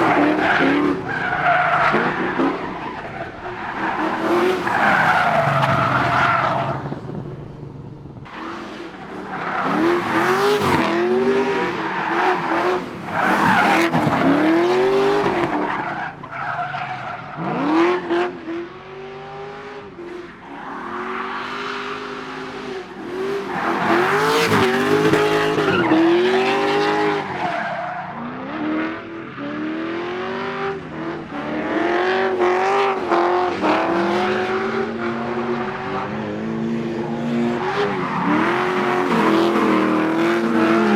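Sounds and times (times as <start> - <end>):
tyres skidding: 0.0 - 18.6, 19.9 - 40.9
car engine revving: 0.0 - 20.0, 20.8 - 27.5, 28.2 - 40.9.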